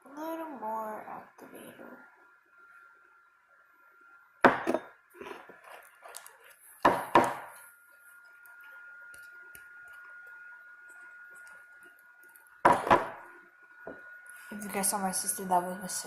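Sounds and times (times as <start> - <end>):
faint steady whine: 0.0 - 16.0
bottles and bowls knocking: 4.5 - 4.9, 6.9 - 7.5, 12.7 - 13.2.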